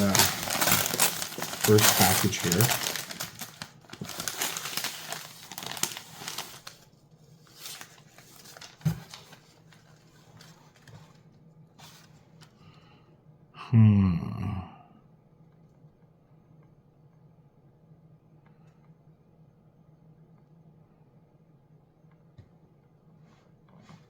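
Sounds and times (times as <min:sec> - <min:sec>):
packing material crinkling: 0:00.0 - 0:06.9, 0:07.5 - 0:10.9.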